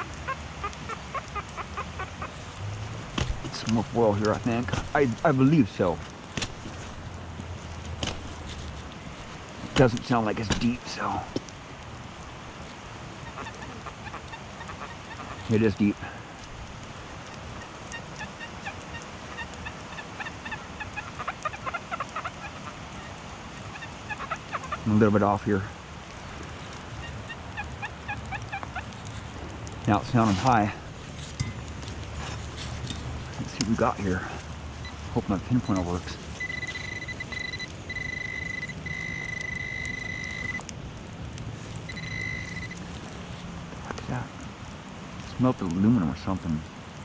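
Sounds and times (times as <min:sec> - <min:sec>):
rain patter: 0:00.0 - 0:47.0
metal detector chirping tones: 0:35.8 - 0:40.6, 0:41.9 - 0:42.8.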